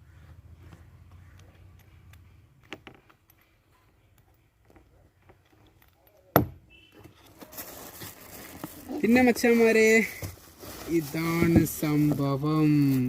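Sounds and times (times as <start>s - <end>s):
handling clicks and taps: 0.6s - 6.6s.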